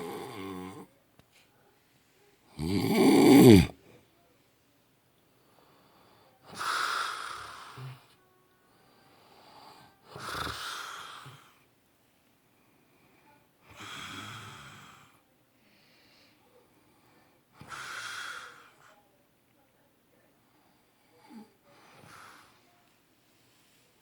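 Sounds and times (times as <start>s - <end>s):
man snoring: 2.6s - 3.8s.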